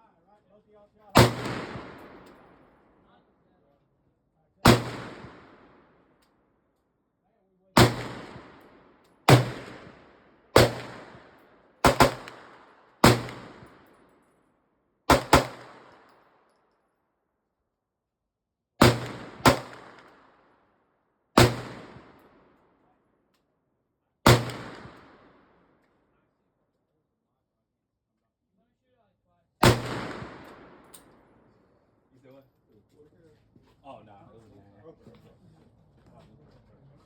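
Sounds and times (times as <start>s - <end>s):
gunshots with echo: 1.2s - 2.7s, 4.6s - 5.8s, 7.8s - 13.7s, 15.1s - 16.0s, 18.8s - 20.2s, 21.4s - 22.2s, 24.3s - 25.4s, 29.6s - 30.9s.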